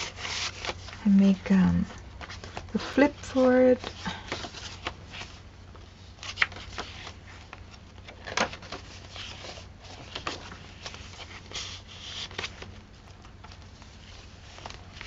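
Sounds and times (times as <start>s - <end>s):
paper pages rustling: 0.0s - 1.3s, 1.9s - 15.0s.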